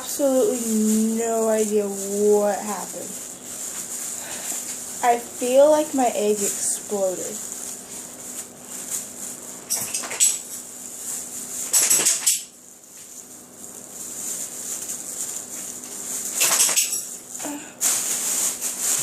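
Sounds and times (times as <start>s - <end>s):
hissy rattling and clattering: 14.4s - 17.2s.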